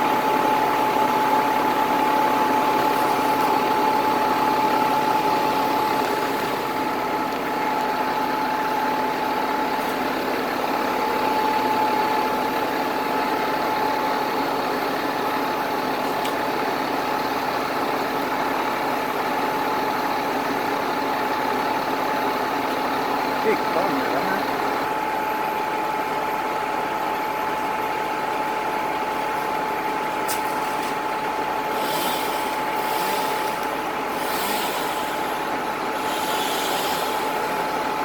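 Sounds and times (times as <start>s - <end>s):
steady whine: 0.0s - 18.0s, 22.5s - 38.0s
crane engine running: 0.0s - 38.0s.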